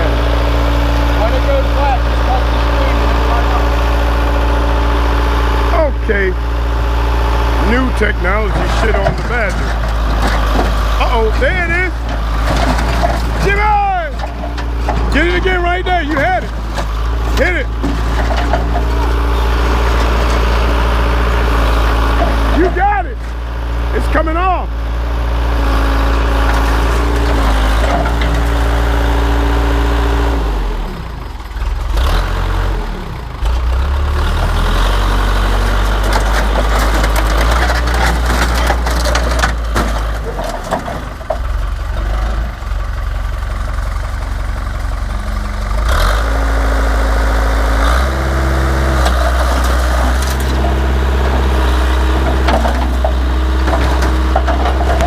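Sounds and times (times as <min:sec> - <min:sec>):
backhoe engine working: 0:00.0 - 0:55.0
sheet metal crunching: 0:07.6 - 0:23.3, 0:26.2 - 0:29.1, 0:35.4 - 0:41.6, 0:48.8 - 0:55.0
metal clanks and bangs: 0:07.6 - 0:23.4, 0:26.2 - 0:29.0, 0:35.5 - 0:43.0, 0:48.9 - 0:55.0.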